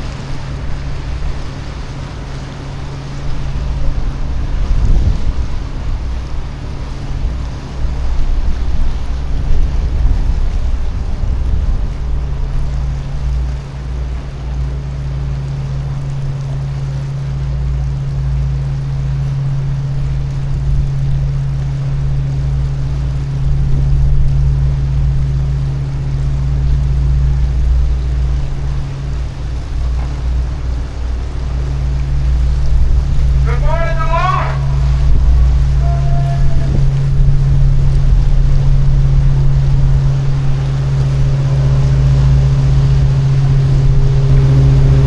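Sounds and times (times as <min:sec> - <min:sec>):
wind rumbling on microphone: 0:00.0 - 0:45.0
diesel engines humming: 0:12.0 - 0:45.0.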